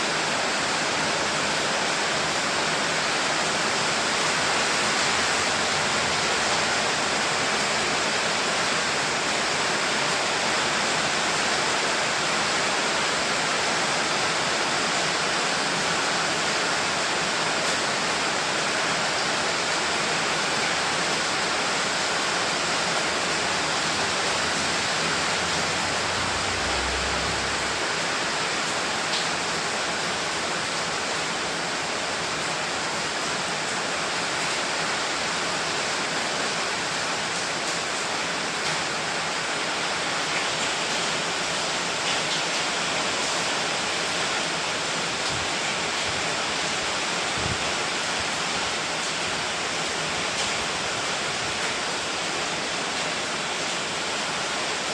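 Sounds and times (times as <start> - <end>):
rain falling steadily: 0.0 - 54.9.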